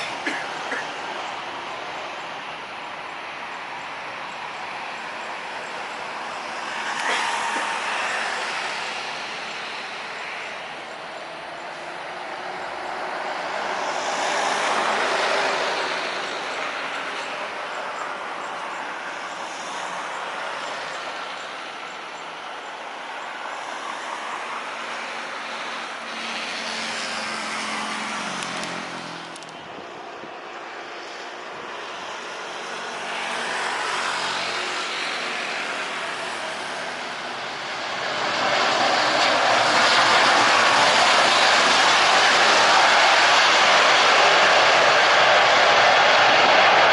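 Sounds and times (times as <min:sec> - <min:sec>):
road traffic passing: 0:00.0 - 0:46.9.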